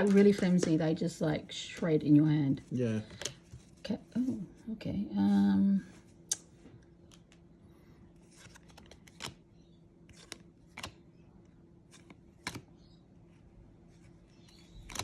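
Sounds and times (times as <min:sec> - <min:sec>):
low steady hum: 0:00.0 - 0:15.0
trading cards and wrapper crinkling: 0:08.2 - 0:09.5, 0:14.4 - 0:15.0.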